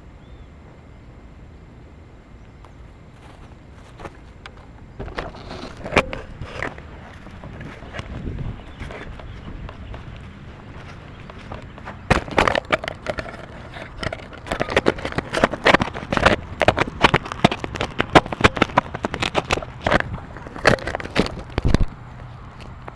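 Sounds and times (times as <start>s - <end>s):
sharp irregular cracks and snaps: 9.7s - 22.9s.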